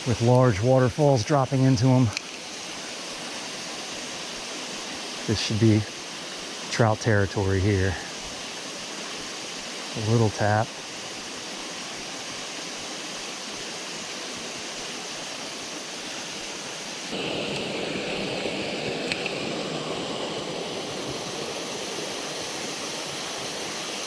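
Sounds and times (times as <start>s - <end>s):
mountain stream rushing: 0.0s - 24.0s
waterfalls pouring into pools: 0.0s - 24.0s.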